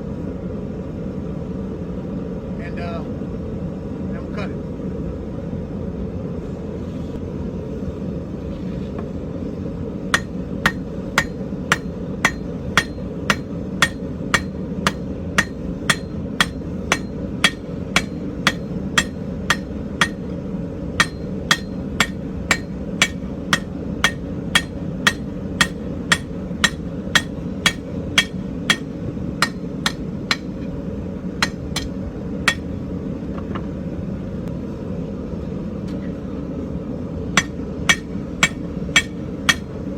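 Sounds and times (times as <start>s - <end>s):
hammer striking iron on anvil: 10.1s - 20.4s, 21.0s - 32.8s, 37.4s - 39.8s.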